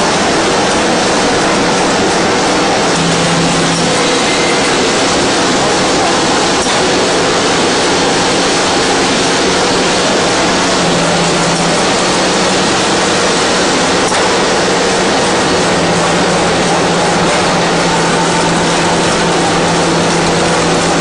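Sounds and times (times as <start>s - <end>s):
machine running mechanical noise: 0.0s - 21.0s
low hum: 2.7s - 5.8s.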